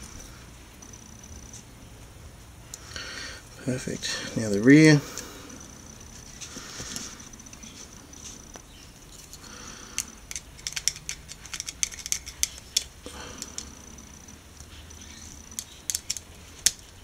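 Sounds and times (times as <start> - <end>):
toy car wheels clicking into plastic: 10.0 - 13.6, 15.5 - 17.0.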